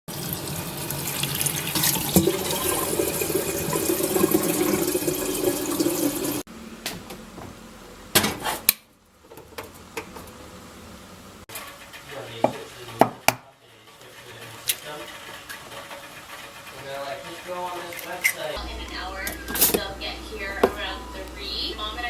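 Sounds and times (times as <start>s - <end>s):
water running from tap: 0.1s - 6.5s.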